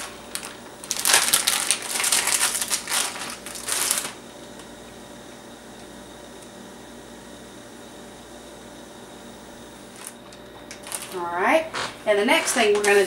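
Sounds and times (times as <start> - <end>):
plastic packaging crinkling: 0.0 - 4.7, 9.9 - 11.4.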